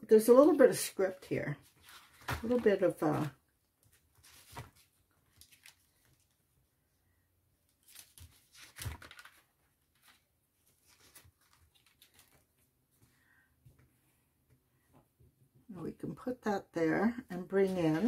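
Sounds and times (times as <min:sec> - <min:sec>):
paper rustling and soft taps: 0:01.6 - 0:06.4, 0:07.7 - 0:15.1.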